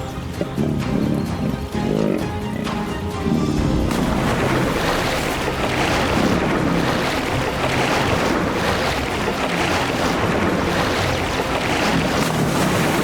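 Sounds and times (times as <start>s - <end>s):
water splashing and churning: 0.0s - 13.0s.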